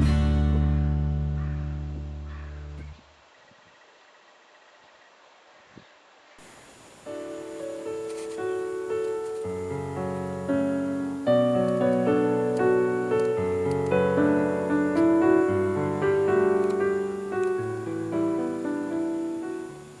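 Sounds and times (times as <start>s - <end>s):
gentle piano music: 7.0s - 20.0s.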